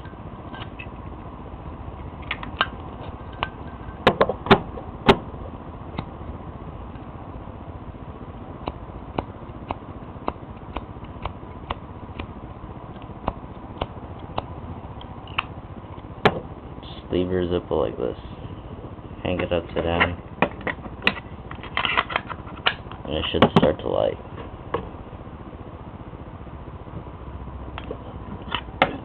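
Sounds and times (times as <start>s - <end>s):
steady background hiss: 0.0s - 29.0s.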